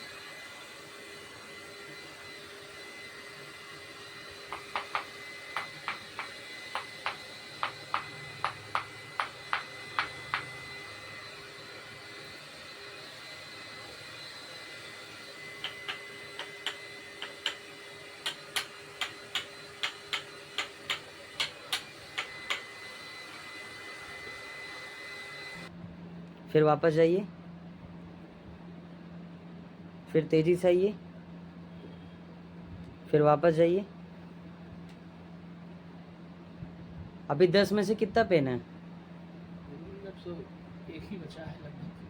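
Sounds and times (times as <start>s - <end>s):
steady machine hum: 0.0s - 26.2s
sharp clicks: 15.6s - 17.6s, 18.2s - 22.7s.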